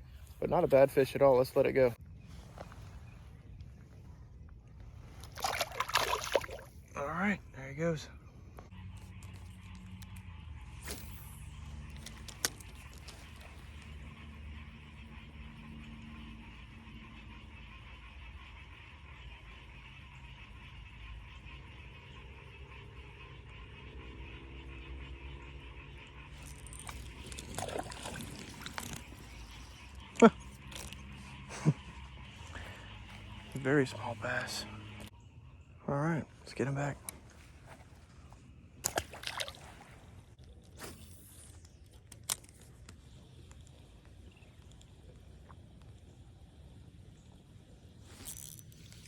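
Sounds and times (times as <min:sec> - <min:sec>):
frogs calling: 0:00.0 - 0:40.6
low steady hum: 0:00.0 - 0:49.0
water sloshing and dripping: 0:05.1 - 0:06.9, 0:26.4 - 0:31.0, 0:38.8 - 0:40.4.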